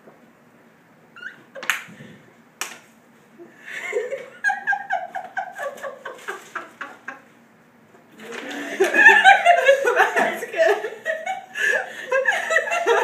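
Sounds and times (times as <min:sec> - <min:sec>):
person giggling: 0:08.3 - 0:13.0.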